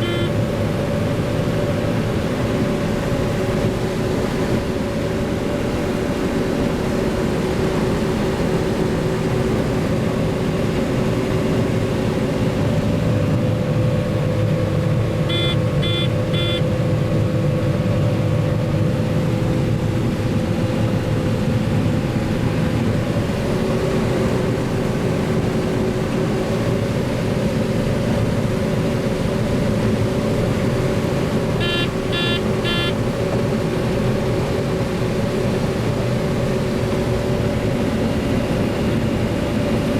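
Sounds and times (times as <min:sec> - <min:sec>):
electronic warning beeps: 0:00.0 - 0:00.4, 0:15.3 - 0:16.7, 0:31.6 - 0:33.0
diesel engine running under load: 0:00.0 - 0:39.9.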